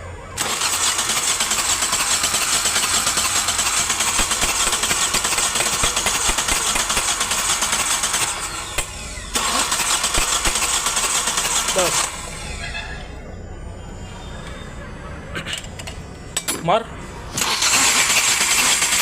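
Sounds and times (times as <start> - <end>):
starter motor cranking engine: 0.4 - 12.6, 17.3 - 19.0.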